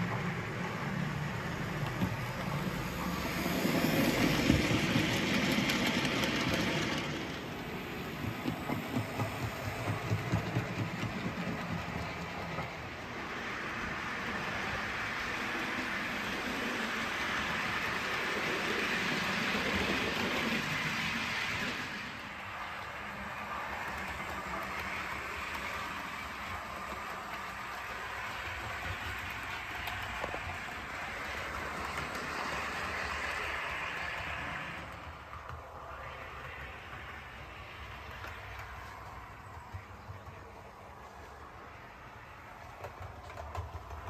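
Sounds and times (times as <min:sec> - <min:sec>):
model locomotive engine sound: 0:00.0 - 0:44.0
wheels clicking over rail joints: 0:00.0 - 0:44.0
hiss: 0:00.1 - 0:35.2.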